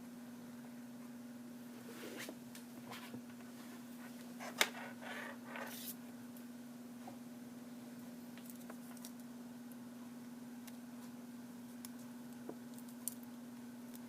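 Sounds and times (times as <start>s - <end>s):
handling rustles and scrapes: 1.8s - 6.0s.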